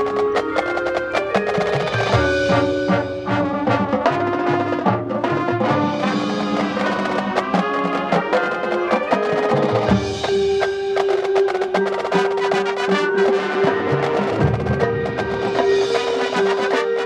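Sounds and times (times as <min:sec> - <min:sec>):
marching band playing: 0:00.0 - 0:17.0
percussion strokes: 0:00.0 - 0:17.0.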